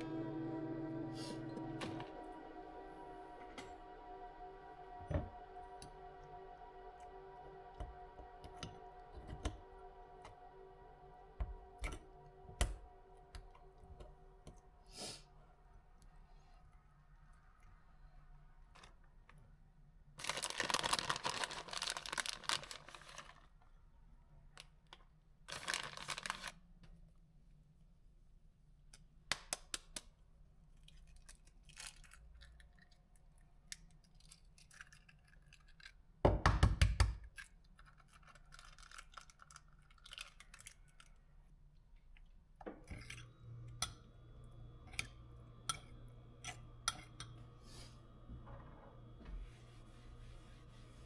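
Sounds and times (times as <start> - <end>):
appliance hum with faint whine: 40.6 - 51.0.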